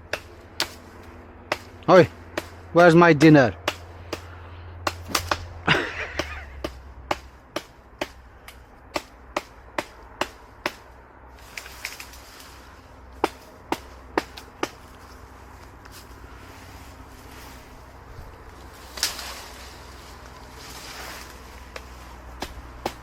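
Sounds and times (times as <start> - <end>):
blade chopping into brush: 4.9 - 8.2.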